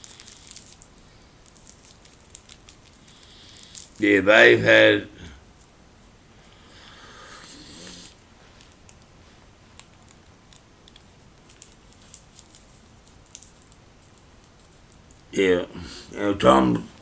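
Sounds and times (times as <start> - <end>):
breathy rush of air: 15.6 - 16.3.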